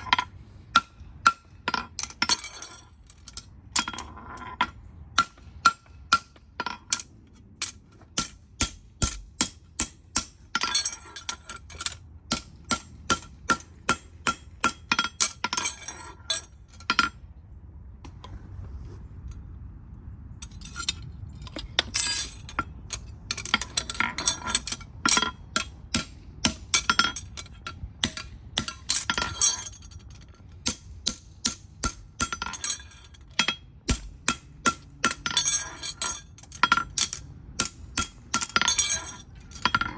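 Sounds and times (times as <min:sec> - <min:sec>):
hand tools clinking on hoof: 0:34.7 - 0:39.9.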